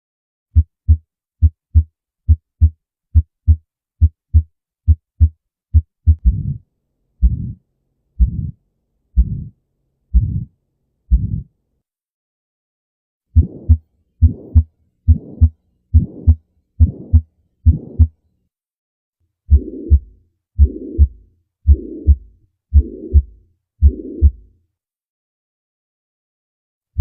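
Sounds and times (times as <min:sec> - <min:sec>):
heartbeat through stethoscope: 0:00.6 - 0:06.6, 0:07.2 - 0:07.6, 0:08.2 - 0:08.6, 0:09.2 - 0:10.5, 0:11.1 - 0:11.5, 0:13.4 - 0:18.1, 0:19.5 - 0:24.5.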